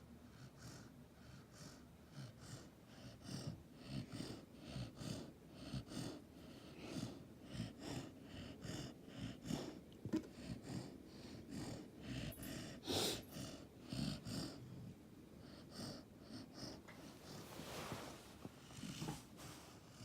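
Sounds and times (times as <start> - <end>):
puppy snoring: 0.3 - 20.0
puppy snorting: 15.6 - 20.0.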